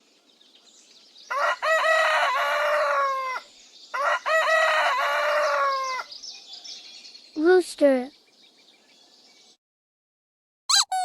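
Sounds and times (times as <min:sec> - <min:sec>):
rooster crowing: 0:01.3 - 0:06.1.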